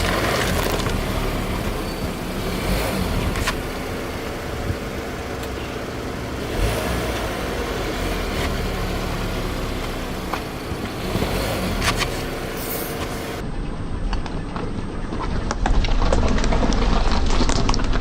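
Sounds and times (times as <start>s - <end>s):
objects crushed under tyres: 0.0s - 4.8s, 14.7s - 18.0s
car engine running: 0.0s - 15.2s.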